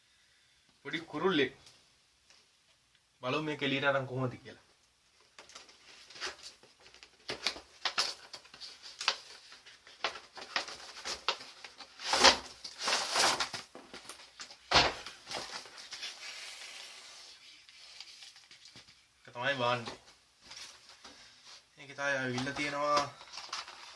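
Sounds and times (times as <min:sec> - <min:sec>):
packaging rustling: 0:05.2 - 0:19.1, 0:22.2 - 0:23.9.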